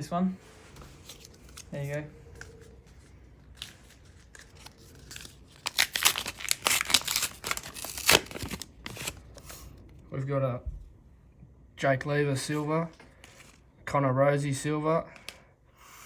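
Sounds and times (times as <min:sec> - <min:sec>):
wrapper crinkling and tearing: 0:03.4 - 0:09.4.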